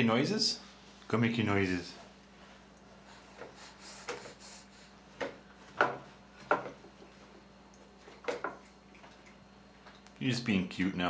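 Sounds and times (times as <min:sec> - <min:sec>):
baby blowing raspberries: 0:03.4 - 0:05.0.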